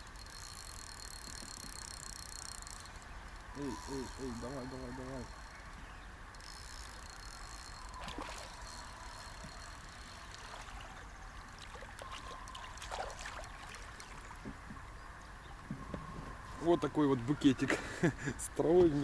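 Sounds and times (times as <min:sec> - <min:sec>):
river water trickling: 0:00.0 - 0:15.6
small splashes and clicks: 0:09.4 - 0:14.4.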